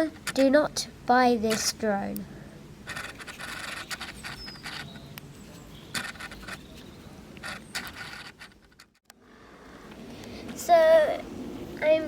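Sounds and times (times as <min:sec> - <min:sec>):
objects scraping and clicking: 0:02.9 - 0:09.0.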